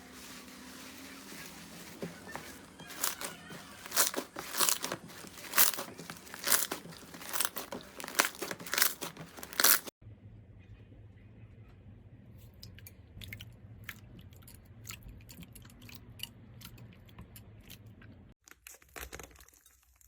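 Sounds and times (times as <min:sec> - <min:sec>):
crunchy slime squeezed by hand: 0:02.0 - 0:09.9.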